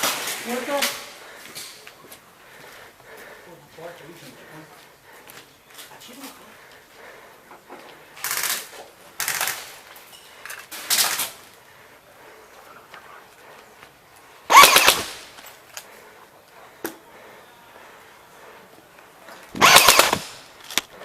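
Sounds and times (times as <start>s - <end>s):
airsoft gun automatic bursts: 8.2s - 9.8s, 14.5s - 15.3s, 19.6s - 20.5s.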